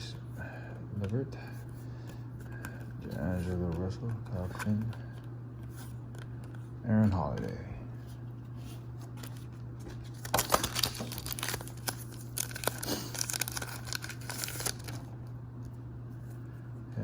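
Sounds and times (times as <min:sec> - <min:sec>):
wrapper tearing and crinkling: 0:10.1 - 0:15.1.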